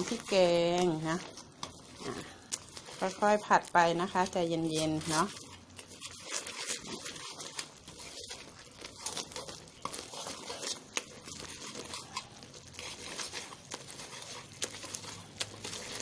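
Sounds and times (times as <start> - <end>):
curry paste sizzling and crackling: 0.0 - 16.0.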